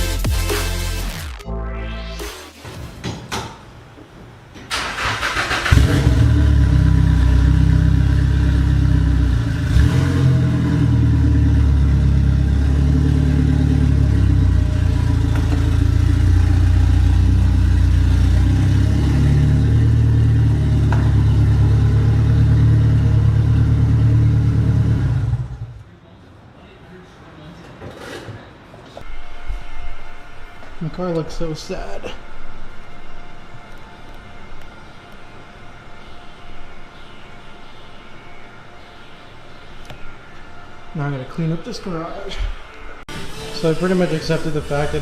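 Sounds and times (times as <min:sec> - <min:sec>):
car engine cranking and idling: 0:04.7 - 0:25.7.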